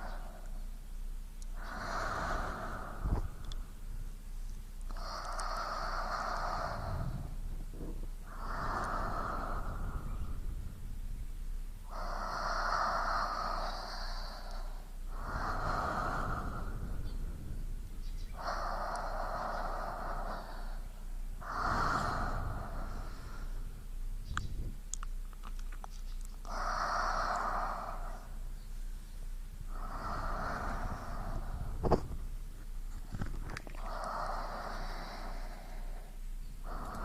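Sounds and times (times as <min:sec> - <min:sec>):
person breathing slowly: 0:00.0 - 0:00.8, 0:01.4 - 0:25.0, 0:26.3 - 0:37.0
faint clicks: 0:03.1 - 0:03.7, 0:04.4 - 0:06.7, 0:13.3 - 0:14.7, 0:18.0 - 0:20.6, 0:24.2 - 0:28.1, 0:32.9 - 0:35.8, 0:36.7 - 0:37.0.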